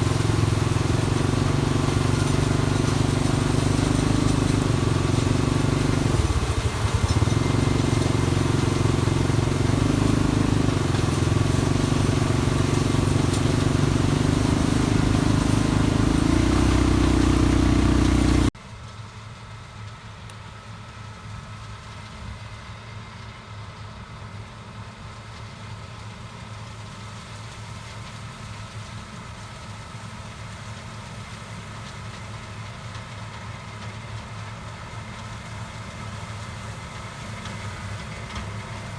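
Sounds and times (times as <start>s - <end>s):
low machine hum: 0.0s - 18.5s
combine harvester engine hum: 0.0s - 18.6s, 29.1s - 38.9s.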